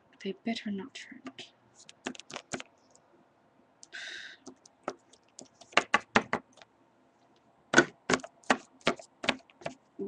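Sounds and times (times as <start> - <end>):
plastic figurines tapping hard surface: 4.5 - 6.6, 7.8 - 9.8.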